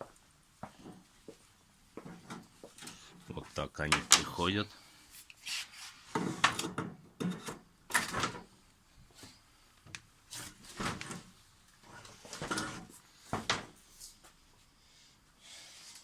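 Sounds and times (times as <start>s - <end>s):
knocks clanks and scrapes: 10.4s - 13.5s.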